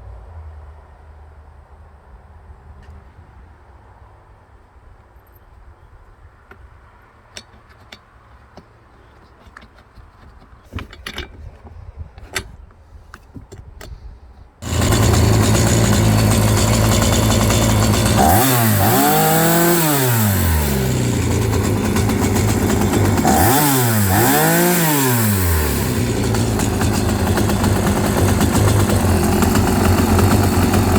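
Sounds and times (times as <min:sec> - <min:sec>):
chainsaw engine running and revving: 0:14.6 - 0:30.9.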